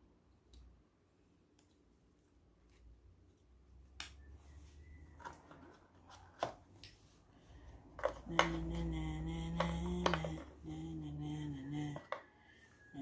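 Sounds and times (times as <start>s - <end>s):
steady low hum: 7.0s - 13.0s
plastic parts clicking and knocking: 7.9s - 8.8s, 9.5s - 10.6s, 11.9s - 12.3s.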